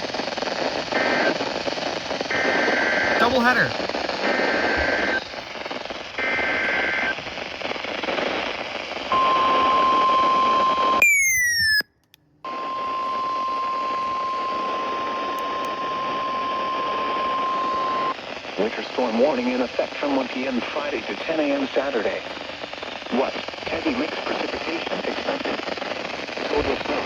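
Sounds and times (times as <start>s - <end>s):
radio hiss: 0.0s - 11.0s, 13.6s - 27.0s
short falling chirp: 11.0s - 11.9s
steady warning alarm tone: 12.5s - 18.1s.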